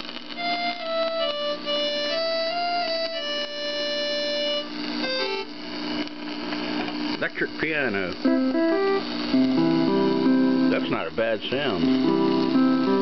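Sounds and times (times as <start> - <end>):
electrical hum: 0.0 - 13.0
keyboard accordion melody: 0.3 - 5.6, 8.2 - 11.1, 11.7 - 13.0.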